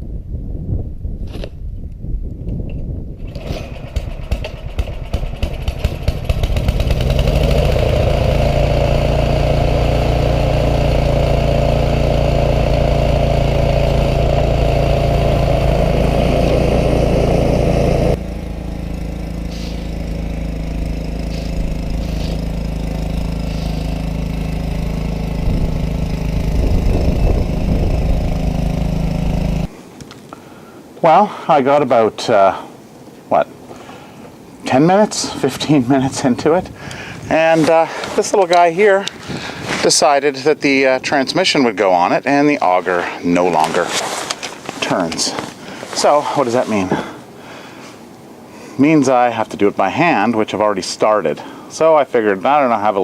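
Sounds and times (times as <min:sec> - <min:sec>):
snowblower engine running: 0:03.2 - 0:29.7, 0:35.2 - 0:40.0, 0:42.6 - 0:47.7.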